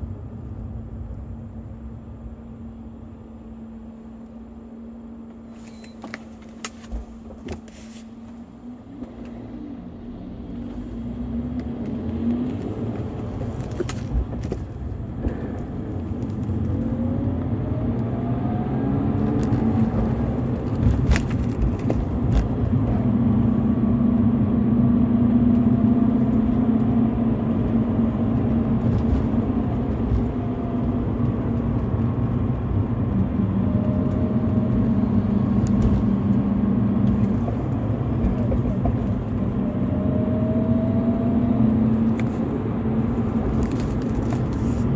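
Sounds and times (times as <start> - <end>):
car engine running: 19.1 - 44.9.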